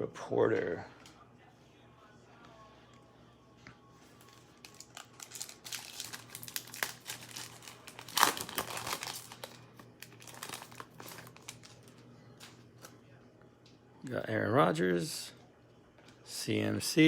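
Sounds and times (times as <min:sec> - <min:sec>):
foil wrapper crinkling and tearing: 0:04.2 - 0:12.9.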